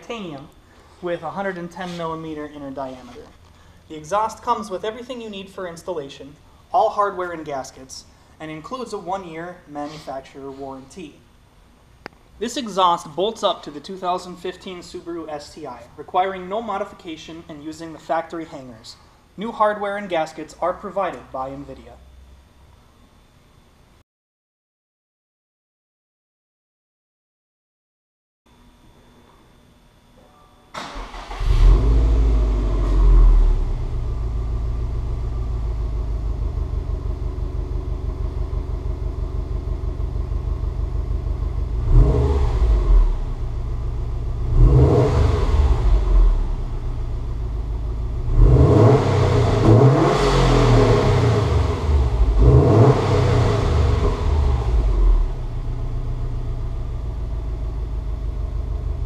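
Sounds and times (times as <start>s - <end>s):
car engine starting and idling: 30.8s - 59.0s
car engine revving: 31.1s - 34.0s, 41.2s - 43.4s, 44.4s - 46.8s, 48.1s - 55.7s.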